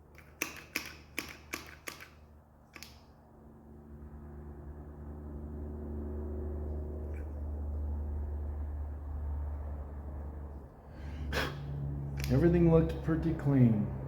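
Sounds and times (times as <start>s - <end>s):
sharp clicks: 0.1s - 3.1s, 12.1s - 12.4s
low hum: 2.2s - 14.0s.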